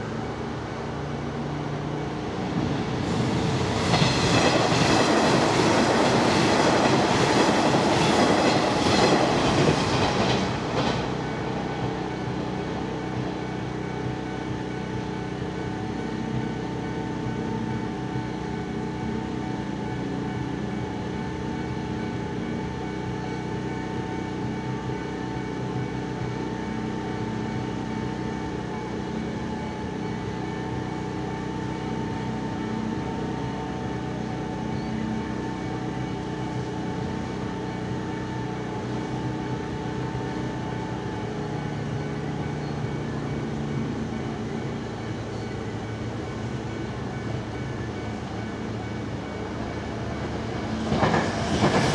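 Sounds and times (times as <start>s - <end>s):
train mechanical hum: 0.0s - 51.9s.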